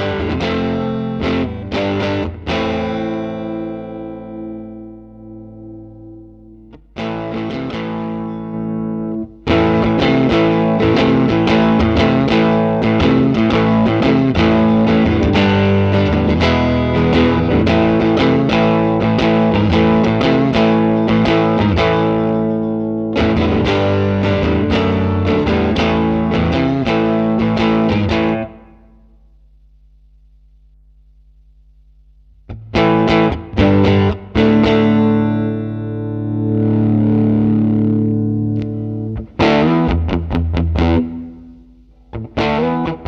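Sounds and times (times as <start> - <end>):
electric guitar playing: 0.0 - 29.2, 32.5 - 43.0
low steady hum: 28.3 - 33.8.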